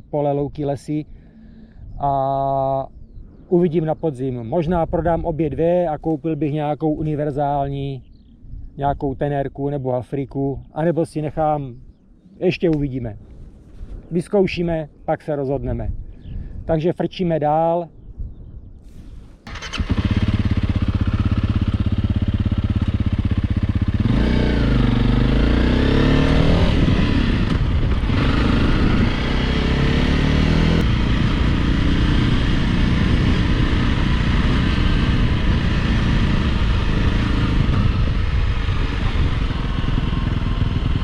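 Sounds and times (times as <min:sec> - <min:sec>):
motorcycle engine starting and revving: 0:19.5 - 0:41.0.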